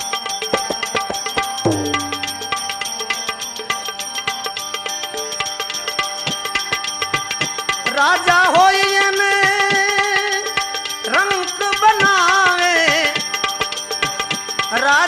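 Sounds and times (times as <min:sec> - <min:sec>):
tabla strokes: 0:00.4 - 0:03.8
steady musical accompaniment: 0:01.7 - 0:03.0
wavering held melody: 0:01.7 - 0:03.1.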